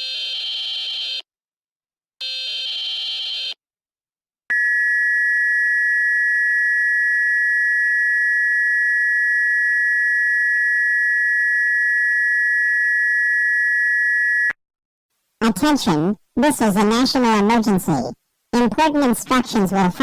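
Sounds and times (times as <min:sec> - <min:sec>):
shrill two-tone alarm: 0:04.5 - 0:14.6.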